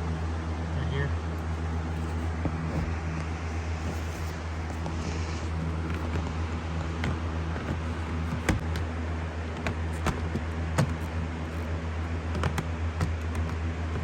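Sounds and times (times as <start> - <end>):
steady low hum: 0.0 - 14.0
plastic trim clicks and knocks: 5.6 - 14.0.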